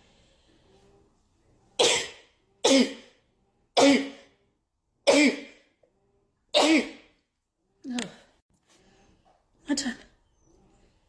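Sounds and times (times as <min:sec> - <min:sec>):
person sneezing: 0:01.8 - 0:03.2, 0:03.8 - 0:04.3, 0:05.1 - 0:05.6, 0:06.6 - 0:07.1.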